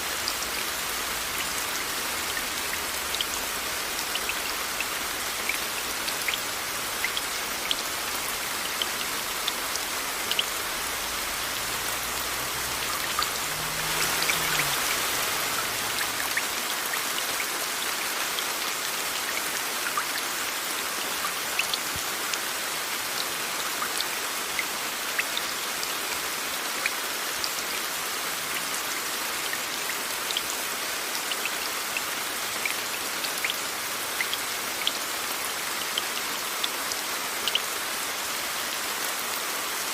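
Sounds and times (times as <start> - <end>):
steady rain: 0.0 - 39.9
raindrops ticking: 1.1 - 17.6
white noise hiss: 8.2 - 16.8.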